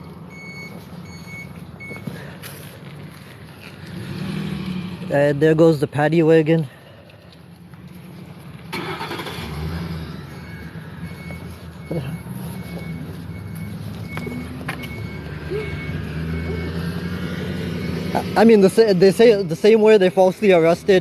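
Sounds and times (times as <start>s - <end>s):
van engine rumbling: 0.0s - 21.0s
high repeating beep: 10.4s - 18.6s.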